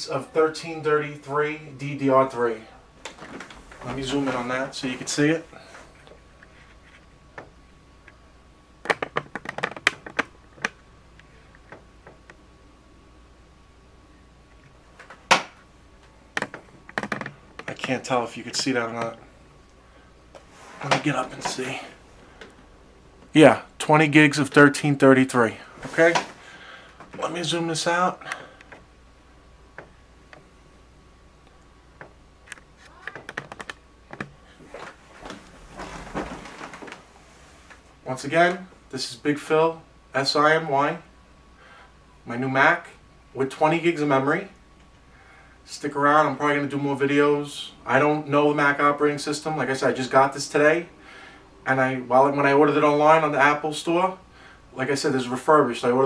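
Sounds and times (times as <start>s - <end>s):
computer keyboard keys tapping: 8.8s - 10.8s, 32.0s - 34.4s.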